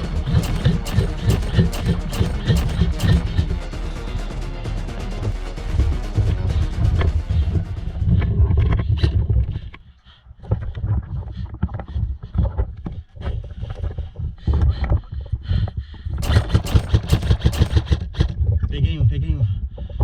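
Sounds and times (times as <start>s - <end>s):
airsoft gun shots: 0.0s - 3.7s, 16.2s - 18.0s.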